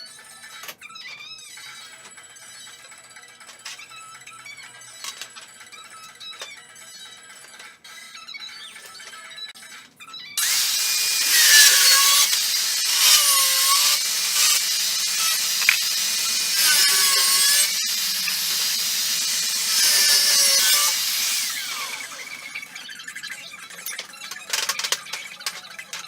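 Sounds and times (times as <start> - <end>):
electric power tool running: 10.4 - 22.8.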